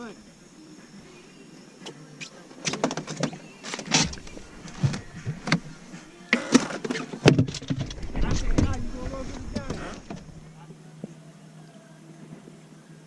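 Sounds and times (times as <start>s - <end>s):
knocks and clatters in boat: 2.6s - 10.5s.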